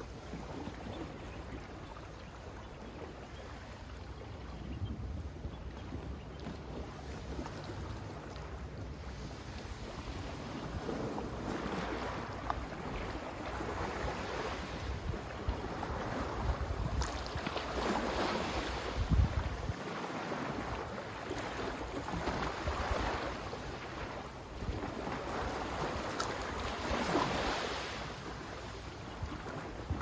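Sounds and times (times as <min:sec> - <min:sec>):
sea waves washing in: 0:09.1 - 0:30.0
wind buffeting microphone: 0:09.8 - 0:19.8.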